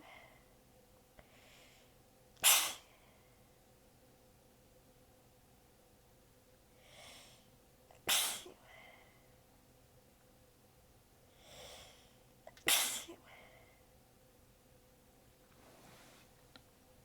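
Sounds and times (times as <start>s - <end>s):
soft in-breath: 1.2s - 2.0s, 11.3s - 12.2s
person sneezing: 2.4s - 2.9s, 8.1s - 8.6s, 12.7s - 13.2s.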